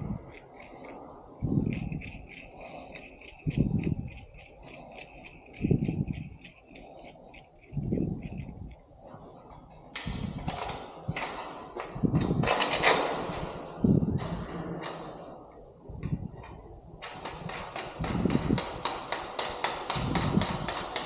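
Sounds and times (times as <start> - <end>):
small metal pieces jangling: 0.2 - 8.8.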